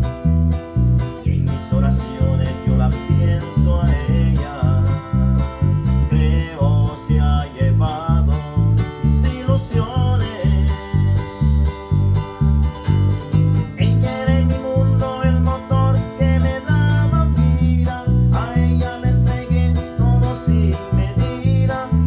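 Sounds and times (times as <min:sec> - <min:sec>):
guitar-led music: 0:00.0 - 0:22.0
steady bass beat: 0:00.0 - 0:22.0.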